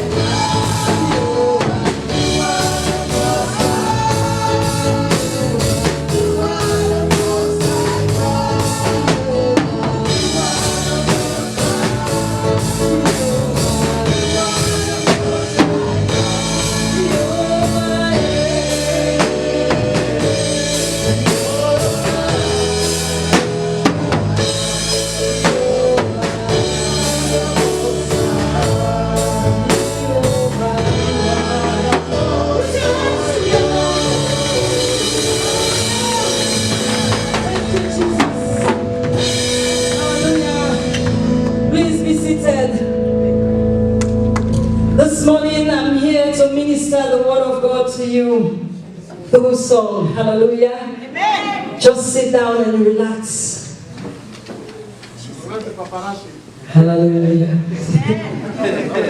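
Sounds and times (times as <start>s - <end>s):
person singing: 0.0s - 43.7s
gospel band playing: 0.0s - 59.0s.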